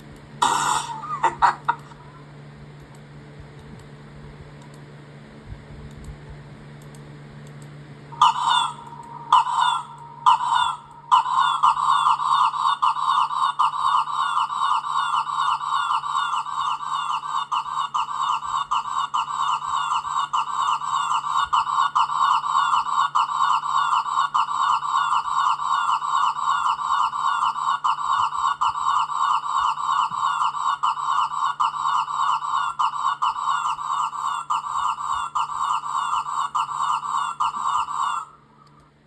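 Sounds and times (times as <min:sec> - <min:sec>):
cartoon warbling chatter: 0:00.4 - 0:02.0, 0:08.2 - 0:38.4.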